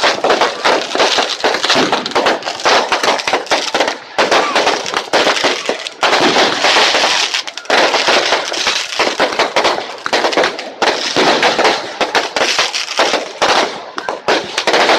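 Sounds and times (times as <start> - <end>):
fireworks bangs and crackles: 0.0 - 14.9.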